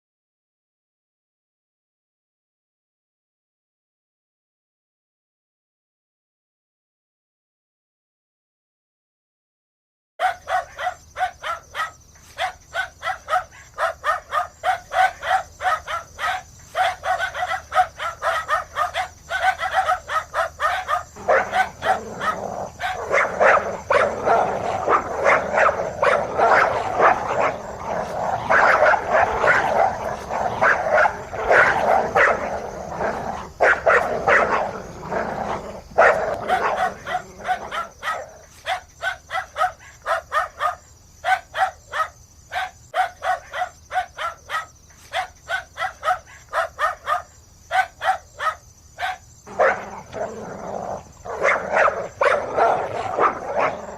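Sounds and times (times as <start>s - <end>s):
dogs barking: 10.2s - 53.9s.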